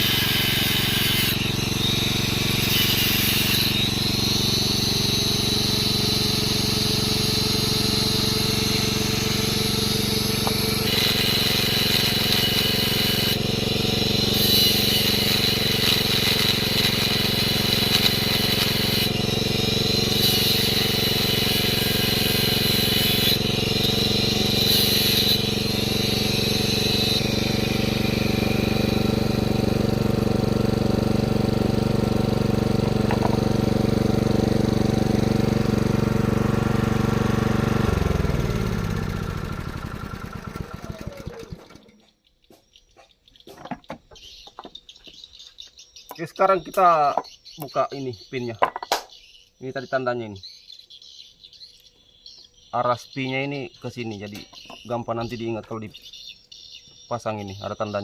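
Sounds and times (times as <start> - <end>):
grinding disc hissing on metal: 0.0 - 39.5
angle grinder whining: 0.0 - 42.1.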